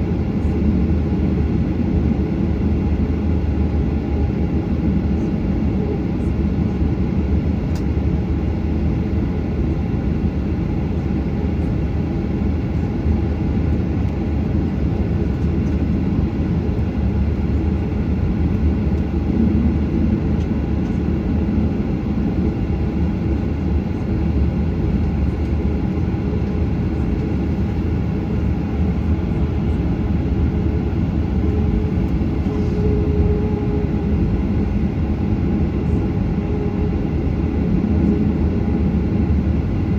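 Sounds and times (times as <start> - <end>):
jet engine cabin rumble: 0.0 - 39.9.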